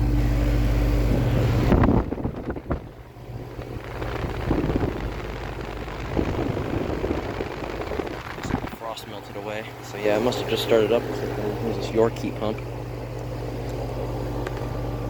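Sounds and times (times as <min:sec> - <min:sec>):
heat pump humming: 0:00.0 - 0:15.0
wind noise: 0:01.1 - 0:08.9.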